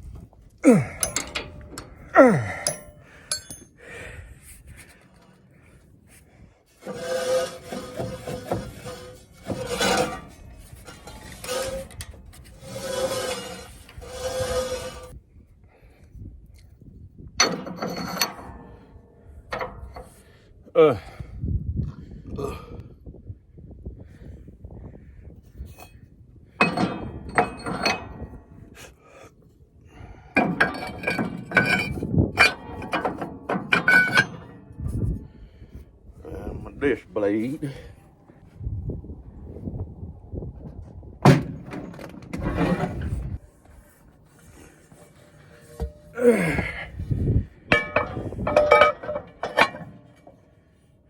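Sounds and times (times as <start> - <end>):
steel parts clanking: 0.6 - 3.8, 6.8 - 15.1, 17.4 - 20.2, 26.6 - 28.5, 30.4 - 35.2, 44.5 - 50.5
metal scraping with squealing ring: 6.8 - 15.2, 30.4 - 35.8, 42.4 - 46.8, 47.7 - 50.9.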